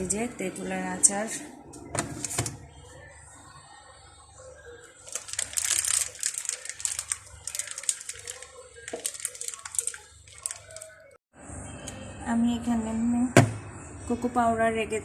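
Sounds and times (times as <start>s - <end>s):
plastic packets crinkling: 5.0s - 11.2s.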